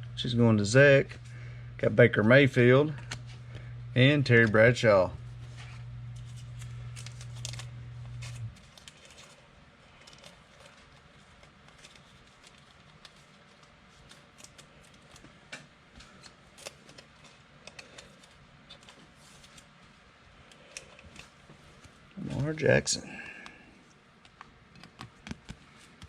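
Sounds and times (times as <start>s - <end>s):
low steady hum: 0.0s - 26.0s
trading cards clicking and snapping: 6.2s - 9.3s, 10.0s - 19.7s, 24.2s - 26.0s.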